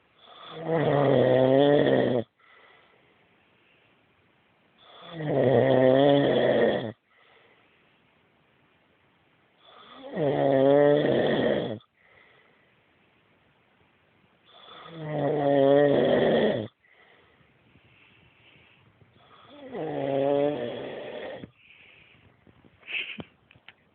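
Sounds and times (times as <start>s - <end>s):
man snoring loudly: 0.2s - 2.3s, 4.8s - 7.0s, 9.6s - 11.9s, 14.5s - 16.8s, 19.2s - 21.6s
faint breathing: 2.3s - 4.1s, 7.0s - 8.2s, 11.9s - 13.0s, 16.7s - 19.8s, 21.3s - 23.3s.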